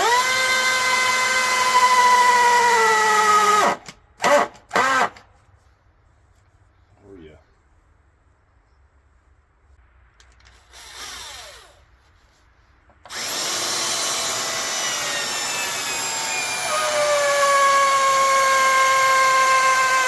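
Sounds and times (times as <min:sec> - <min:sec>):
electric drill driving screw into wood: 0:00.0 - 0:05.2, 0:10.4 - 0:11.8, 0:13.0 - 0:20.0.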